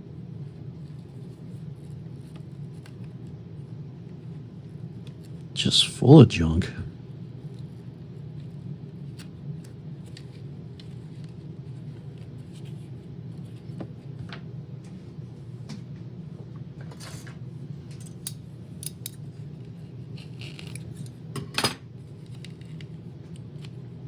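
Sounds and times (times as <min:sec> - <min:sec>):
steady low hum: 0:04.6 - 0:08.9.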